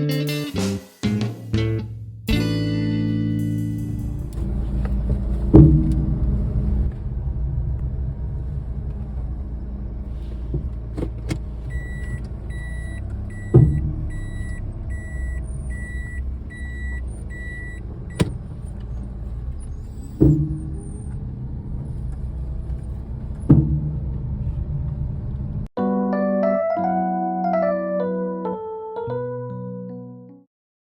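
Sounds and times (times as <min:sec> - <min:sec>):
low road rumble: 0:01.5 - 0:25.7
loud suspension knocks: 0:04.1 - 0:09.5, 0:10.3 - 0:25.0
high beep: 0:11.7 - 0:17.8.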